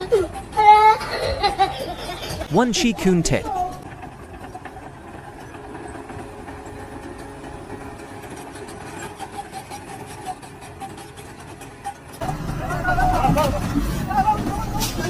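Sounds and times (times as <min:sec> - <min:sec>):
excavator engine idling: 0:12.2 - 0:15.0.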